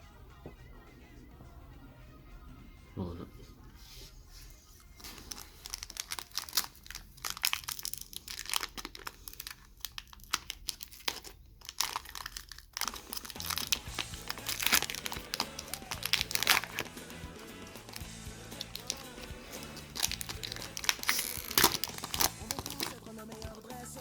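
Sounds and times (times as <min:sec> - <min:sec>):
background music: 0:00.0 - 0:06.2, 0:12.8 - 0:24.0
foil wrapper crinkling and tearing: 0:05.0 - 0:24.0.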